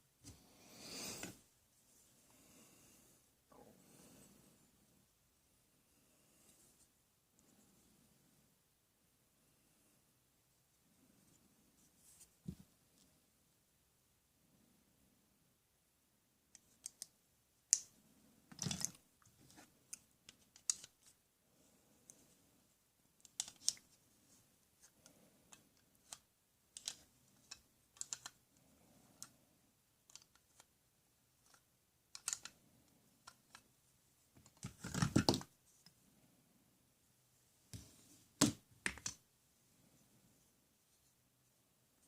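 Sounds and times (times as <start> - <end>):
small objects clicking and tapping: 19.9 - 21.1, 23.2 - 23.9, 26.8 - 28.4, 31.4 - 32.6.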